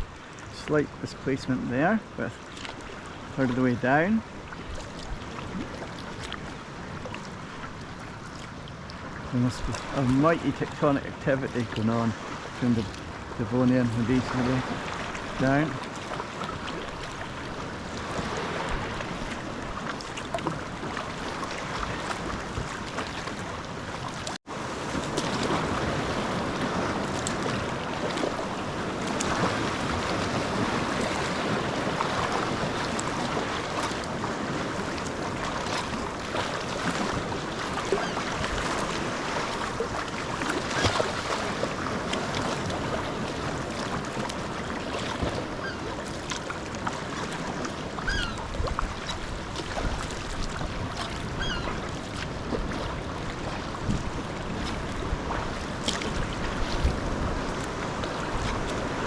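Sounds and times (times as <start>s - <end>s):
paddle strokes splashing: 0.0s - 59.0s
waves washing: 0.0s - 59.0s
wind on microphone: 14.0s - 59.0s.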